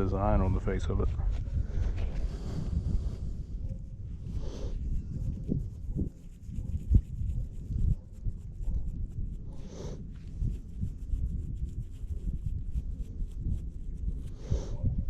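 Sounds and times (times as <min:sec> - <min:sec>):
small brush scrubbing a button: 0:04.8 - 0:09.4.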